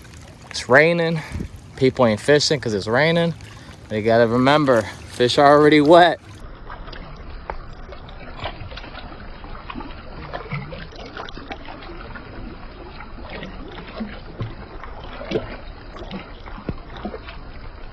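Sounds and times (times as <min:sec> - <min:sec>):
wind rumble on microphone: 0:00.0 - 0:17.9.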